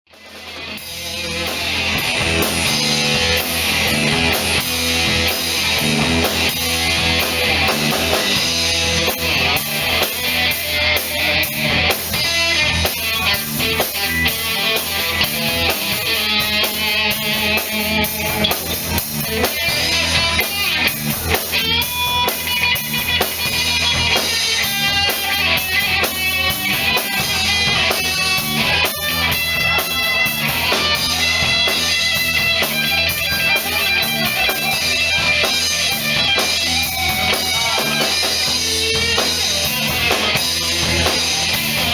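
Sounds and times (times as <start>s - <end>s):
bass: 0.0s - 41.9s
drum kit: 0.1s - 41.9s
guitars: 0.1s - 41.9s.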